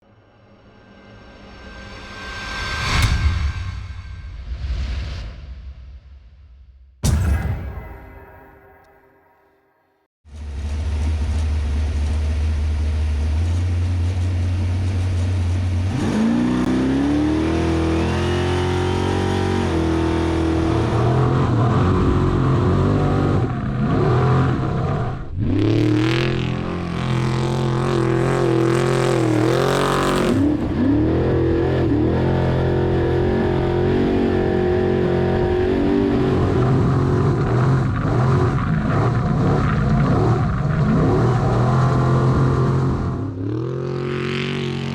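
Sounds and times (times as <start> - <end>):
truck engine revving: 10.4 - 44.9.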